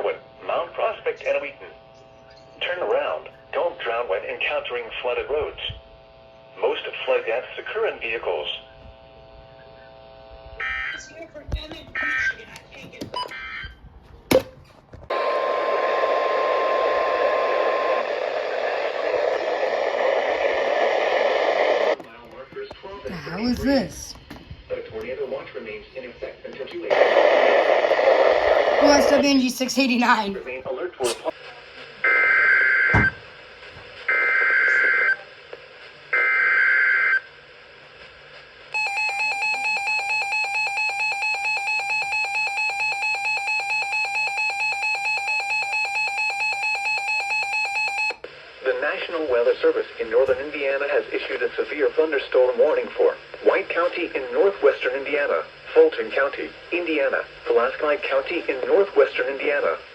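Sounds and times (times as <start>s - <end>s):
radio static hiss: 0.0s - 13.1s, 15.2s - 38.7s, 48.3s - 59.9s
data tones burst: 28.8s - 30.3s.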